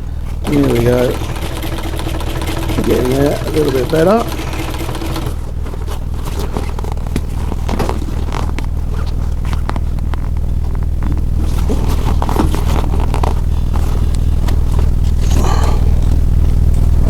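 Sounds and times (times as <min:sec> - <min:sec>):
sewing machine running: 0:00.4 - 0:06.0.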